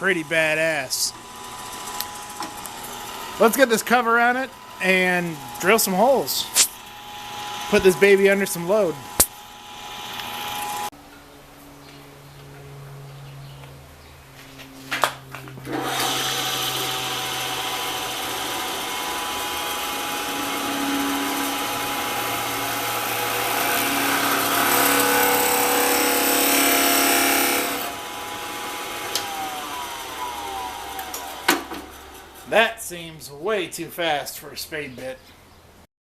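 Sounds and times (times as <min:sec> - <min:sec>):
drill press cutting: 0:00.0 - 0:10.9, 0:15.7 - 0:32.6
drill press motor hum: 0:00.0 - 0:10.9, 0:15.7 - 0:32.5
spindle whine winding down: 0:00.0 - 0:10.9, 0:15.6 - 0:33.2.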